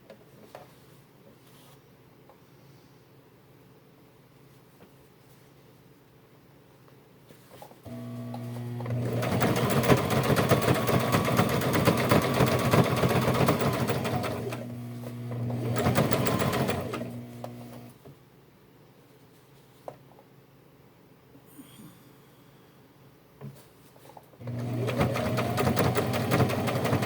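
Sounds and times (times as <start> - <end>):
sewing machine stitching: 7.9 - 18.0, 24.4 - 27.0.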